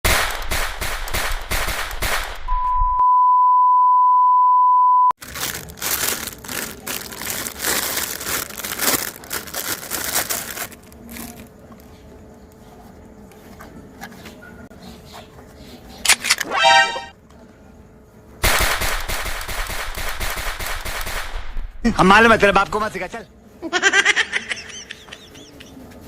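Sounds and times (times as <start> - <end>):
steady high beep: 2.5 - 5.1, 16.5 - 17.1
shredder crunching and cracking: 5.2 - 11.4.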